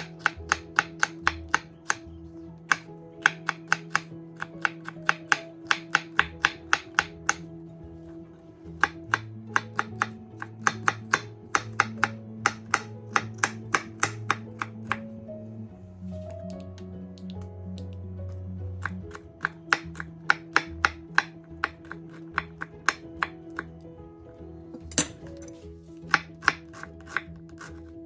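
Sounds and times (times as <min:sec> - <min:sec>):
knife chopping on cutting board: 0:00.0 - 0:02.0, 0:02.7 - 0:07.4, 0:08.8 - 0:15.0, 0:18.8 - 0:23.7, 0:26.0 - 0:27.9
background music: 0:00.0 - 0:28.0.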